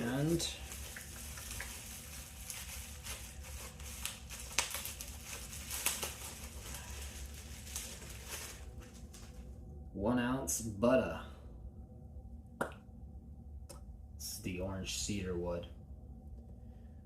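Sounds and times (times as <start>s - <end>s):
faint crinkling and rustling: 0.0s - 9.5s.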